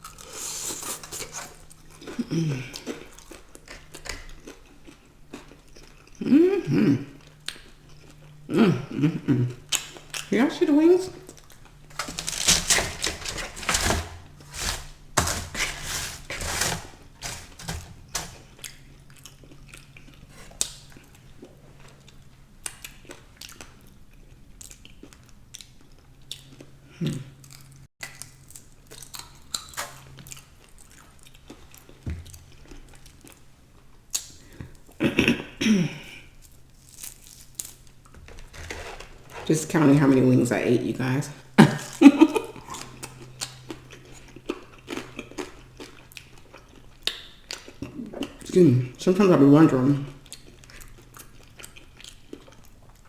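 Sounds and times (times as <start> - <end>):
person chewing: 0.0 - 10.3, 11.2 - 35.0, 41.7 - 48.6, 50.1 - 53.0.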